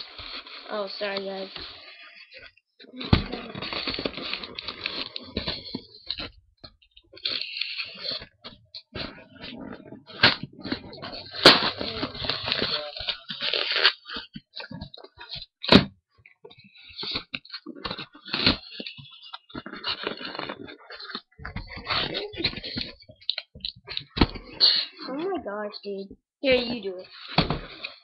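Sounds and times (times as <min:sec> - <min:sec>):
sharp crack: 0:10.2 - 0:14.0.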